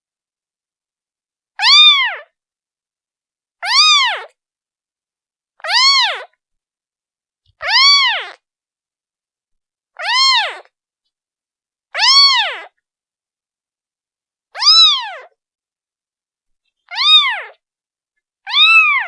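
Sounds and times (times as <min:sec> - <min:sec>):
kitten meowing: 0:01.6 - 0:02.3, 0:03.6 - 0:04.3, 0:05.6 - 0:06.3, 0:07.6 - 0:08.4, 0:10.0 - 0:10.7, 0:12.0 - 0:12.7, 0:14.6 - 0:15.3, 0:16.9 - 0:17.6, 0:18.5 - 0:19.0.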